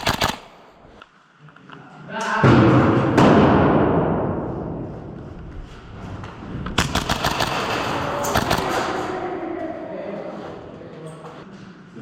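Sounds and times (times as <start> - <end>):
airsoft guns firing bursts: 0.0 - 0.9, 6.8 - 9.0.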